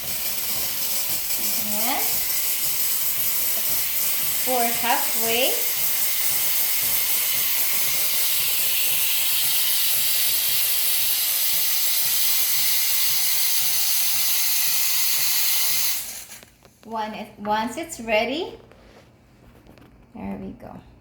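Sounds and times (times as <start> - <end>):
loud hiss of steam venting: 0.0 - 16.5.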